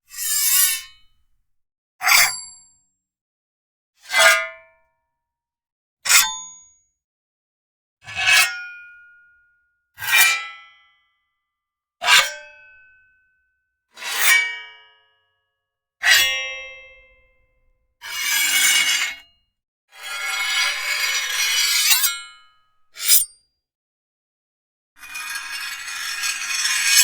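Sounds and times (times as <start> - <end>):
metal blade scraping on metal: 0.1 - 1.3, 20.1 - 23.4, 25.0 - 27.0
metal blade slices: 20.7 - 22.2, 23.0 - 23.3.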